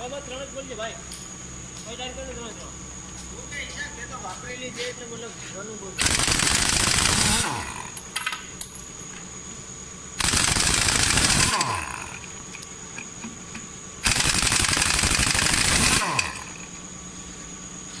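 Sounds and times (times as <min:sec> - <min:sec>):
pneumatic impact wrench hammering: 0:06.0 - 0:09.2, 0:10.2 - 0:16.8.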